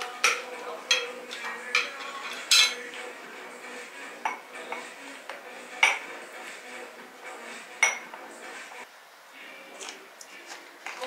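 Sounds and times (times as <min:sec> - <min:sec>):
dishes and cutlery clinking: 0:00.0 - 0:03.0, 0:04.2 - 0:06.2, 0:07.7 - 0:08.3.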